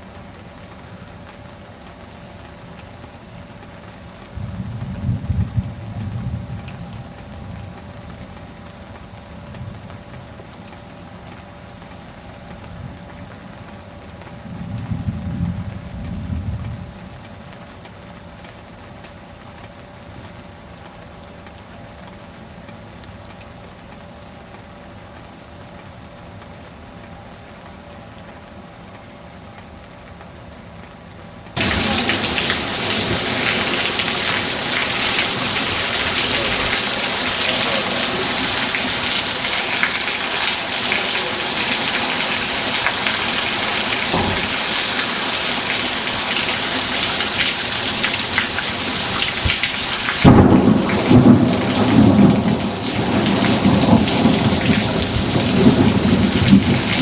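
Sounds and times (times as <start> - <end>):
heavy rain pouring: 0.0 - 57.0
thunderclap rumbling: 4.3 - 7.8, 31.6 - 46.4, 49.1 - 57.0.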